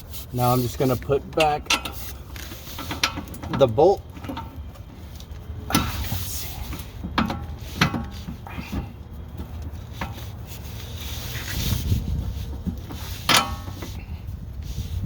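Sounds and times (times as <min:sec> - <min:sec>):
steady low hum: 0:00.0 - 0:15.0
metal clicks and knocks: 0:06.8 - 0:08.9.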